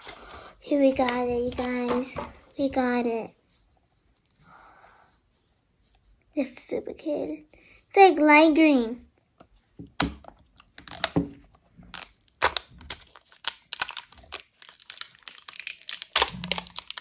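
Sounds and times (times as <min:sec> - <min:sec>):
slime and plastic crinkling: 0:00.0 - 0:02.7, 0:09.9 - 0:17.0.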